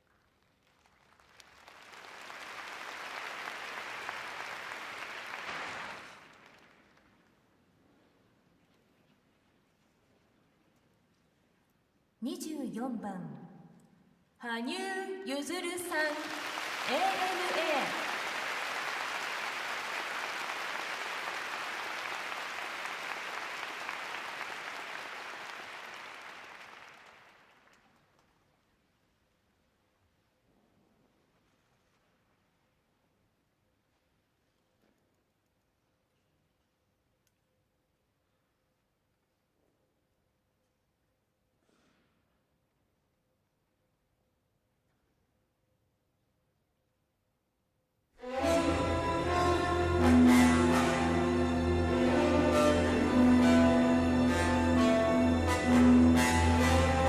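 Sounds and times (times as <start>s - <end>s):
crowd applauding: 0.6s - 7.2s, 15.8s - 28.1s.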